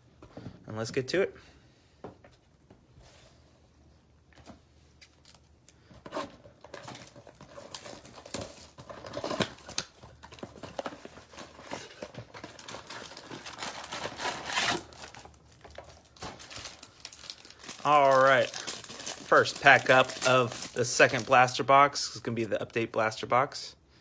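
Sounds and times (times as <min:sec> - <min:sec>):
cardboard ripping: 0:06.1 - 0:21.3
plastic wrap crinkling and tearing: 0:06.1 - 0:22.0.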